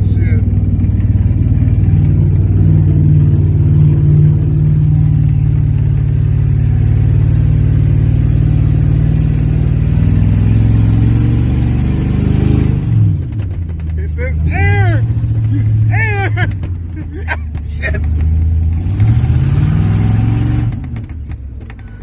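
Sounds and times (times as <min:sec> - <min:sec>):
pickup engine droning: 0:00.0 - 0:22.0.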